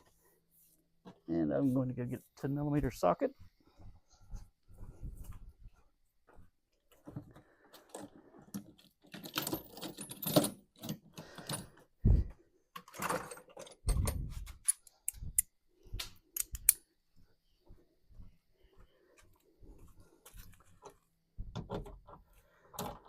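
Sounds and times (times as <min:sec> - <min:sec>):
metal tools clinking and rattling: 0:08.6 - 0:11.7, 0:12.8 - 0:15.2.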